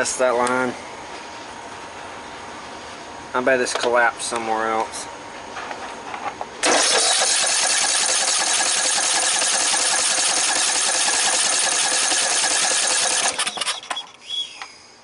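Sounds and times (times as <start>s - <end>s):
lawn tractor engine cranking: 6.6s - 14.2s.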